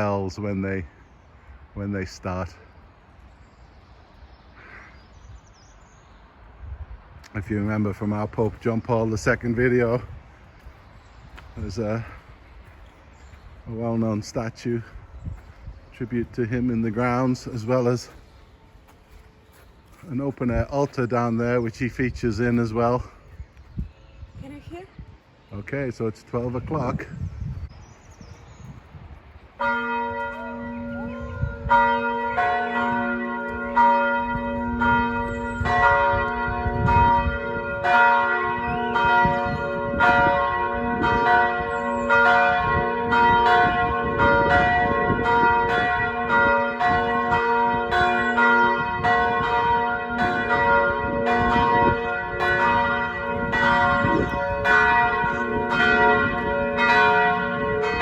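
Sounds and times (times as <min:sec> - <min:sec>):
higher church bells: 0:29.5 - 0:58.0
deep church bell: 0:29.6 - 0:58.0.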